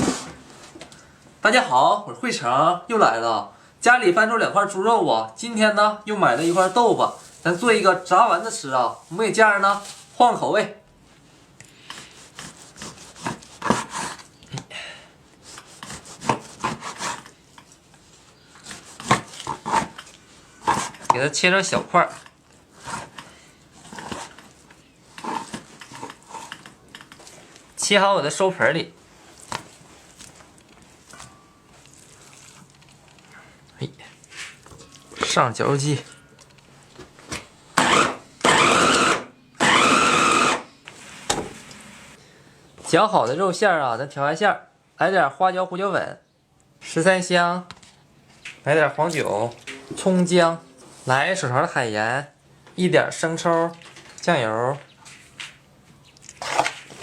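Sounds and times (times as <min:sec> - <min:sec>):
knife cutting on cutting board: 0:11.9 - 0:14.2, 0:15.4 - 0:17.3
electric meat grinder running: 0:37.8 - 0:40.6.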